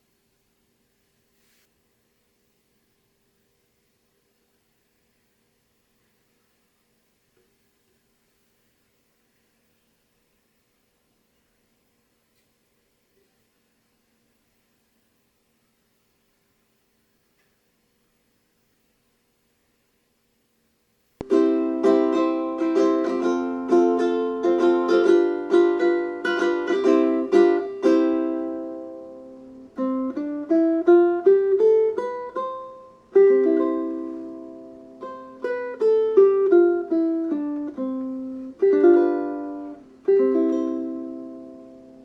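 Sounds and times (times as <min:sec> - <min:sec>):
ukulele playing: 0:21.2 - 0:42.0.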